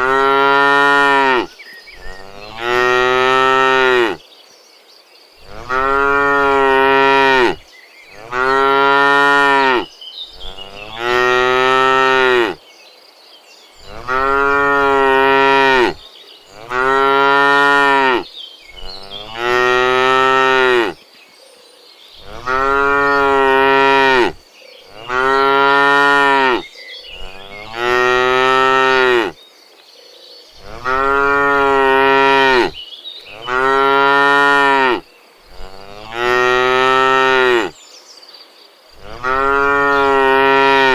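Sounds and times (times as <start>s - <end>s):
cow mooing: 0.0s - 1.5s, 2.2s - 4.2s, 5.4s - 12.6s, 13.8s - 18.2s, 18.8s - 21.0s, 22.2s - 26.6s, 27.2s - 29.4s, 30.6s - 37.7s, 39.0s - 40.9s.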